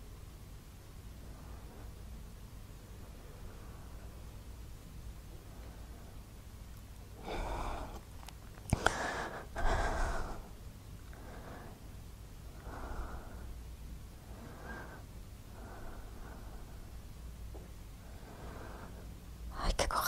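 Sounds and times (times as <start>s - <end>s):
person breathing through nose: 8.7s - 10.5s.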